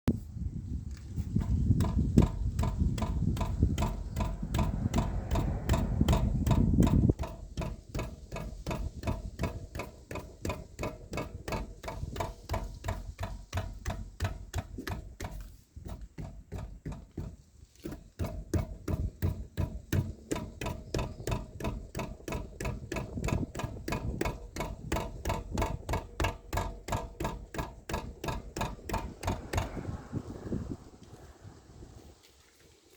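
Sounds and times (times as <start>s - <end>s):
heavy low rumble: 0.6s - 9.4s, 22.4s - 32.1s
suspension knocking rattle: 1.2s - 30.9s.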